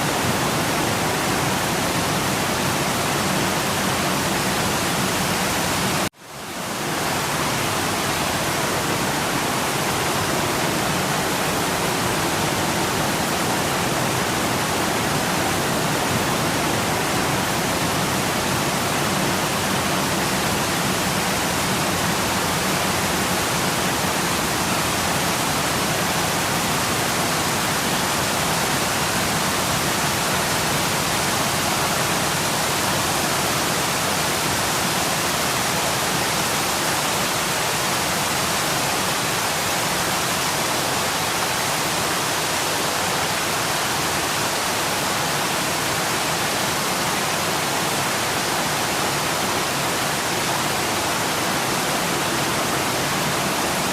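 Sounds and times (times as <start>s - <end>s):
waterfall roaring: 0.0s - 53.9s.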